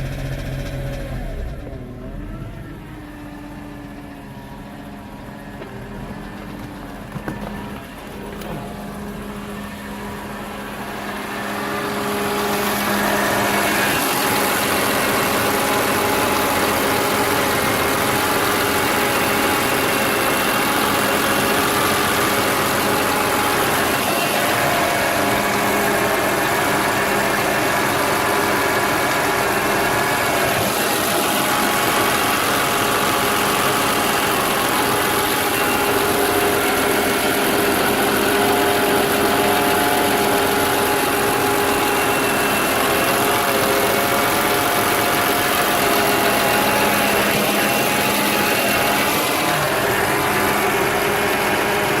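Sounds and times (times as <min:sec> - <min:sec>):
car engine running: 0:00.0 - 0:52.0.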